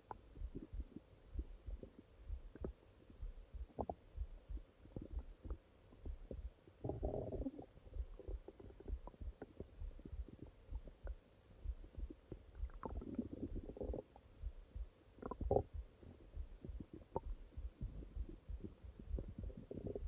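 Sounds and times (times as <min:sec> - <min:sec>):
stomach growling: 0:01.8 - 0:02.8, 0:03.6 - 0:04.0, 0:04.9 - 0:11.2, 0:11.9 - 0:14.3, 0:15.2 - 0:20.0.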